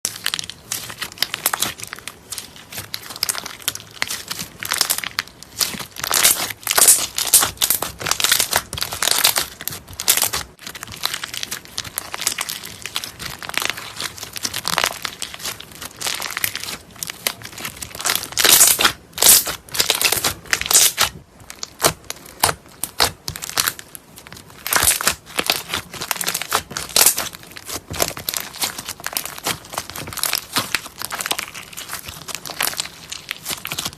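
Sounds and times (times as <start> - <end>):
slime crackling and clicking: 0.1 - 33.9.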